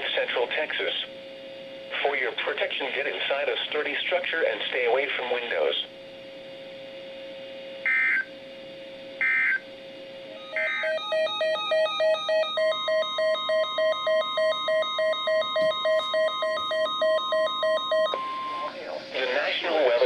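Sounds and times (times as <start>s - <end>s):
steady alarm tone: 7.8s - 8.3s, 9.2s - 9.7s, 10.3s - 19.8s
rapid electronic beeping: 10.4s - 20.0s.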